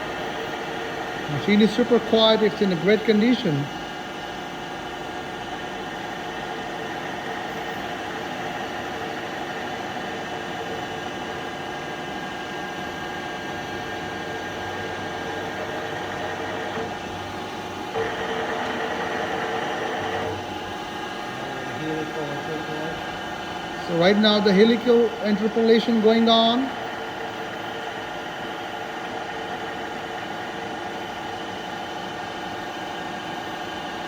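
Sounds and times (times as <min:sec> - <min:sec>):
milling machine humming: 0:00.0 - 0:34.0.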